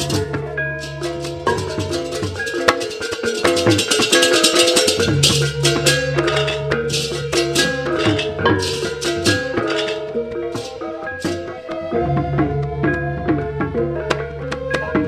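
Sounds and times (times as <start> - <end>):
cymbal clashes: 0.0 - 11.8
metallophone notes: 0.0 - 15.0.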